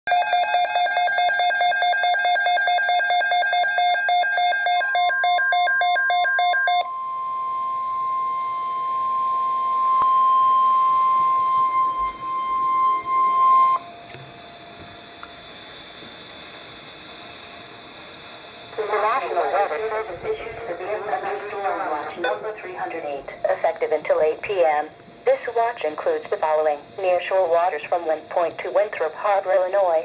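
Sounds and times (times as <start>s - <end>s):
pulsing electronic alarm beeps: 0.1s - 14.7s, 22.2s - 23.8s
steady high alarm tone: 0.1s - 28.4s.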